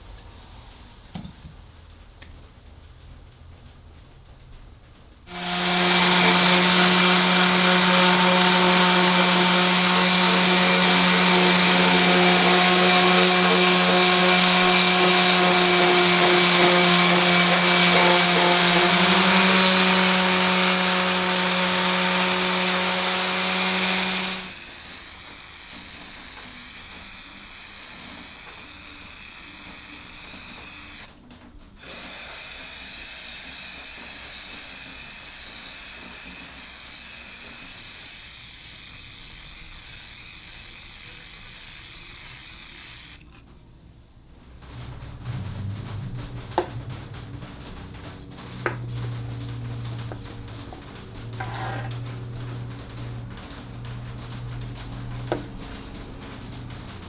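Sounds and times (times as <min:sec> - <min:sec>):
power sander grinding metal: 0:05.3 - 0:31.1, 0:31.8 - 0:41.3.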